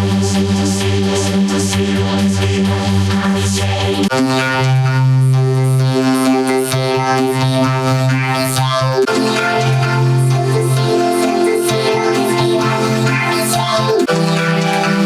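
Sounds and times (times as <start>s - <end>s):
held synthesizer chords: 4.1s - 15.0s.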